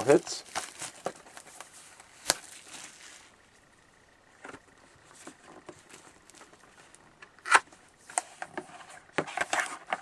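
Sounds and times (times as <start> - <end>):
packaging rustling: 0.0 - 3.4, 5.0 - 7.0.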